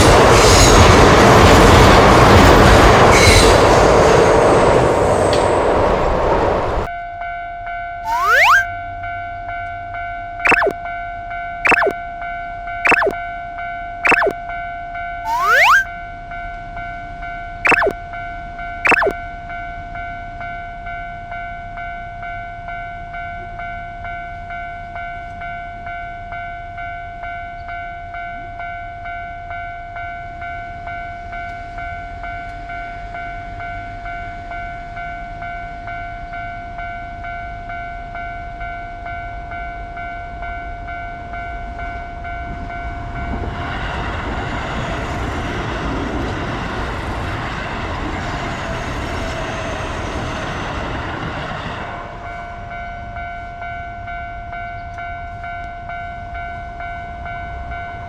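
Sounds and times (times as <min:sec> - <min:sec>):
passing train: 0:00.0 - 0:06.9, 0:28.1 - 0:58.0
level-crossing alarm ringing: 0:08.1 - 0:08.7, 0:10.5 - 0:10.7, 0:11.7 - 0:11.9, 0:12.9 - 0:13.2, 0:14.1 - 0:14.3, 0:15.3 - 0:15.9, 0:17.7 - 0:17.9, 0:18.9 - 0:19.1
whistle-like swoops: 0:08.1 - 0:08.7, 0:10.5 - 0:10.7, 0:11.7 - 0:11.9, 0:12.9 - 0:13.2, 0:14.1 - 0:14.3, 0:15.3 - 0:15.9, 0:17.7 - 0:17.9, 0:18.9 - 0:19.1.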